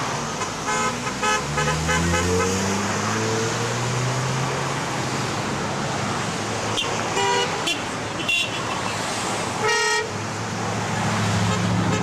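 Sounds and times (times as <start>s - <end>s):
road traffic passing: 0.0s - 12.0s
car horns honking: 0.4s - 2.8s, 6.7s - 9.0s, 9.6s - 10.2s, 11.4s - 12.0s.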